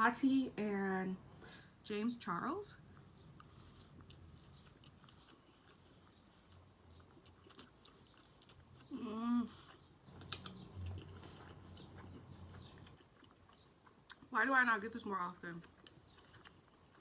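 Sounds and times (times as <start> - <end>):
chewing food: 2.8 - 17.0
wet mouth clicks and smacks: 10.1 - 10.6.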